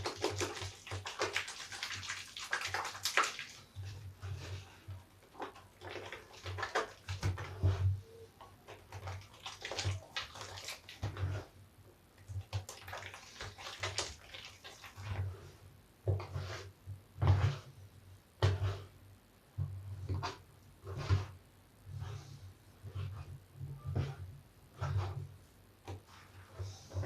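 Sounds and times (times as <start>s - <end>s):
wet sponge squelching: 0.0s - 11.6s, 12.2s - 15.6s.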